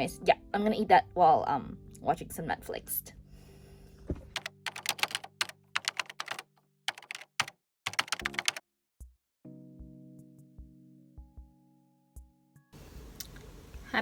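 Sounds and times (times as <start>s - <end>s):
faint background music: 0.0s - 6.4s
typing on a keyboard: 4.4s - 8.6s.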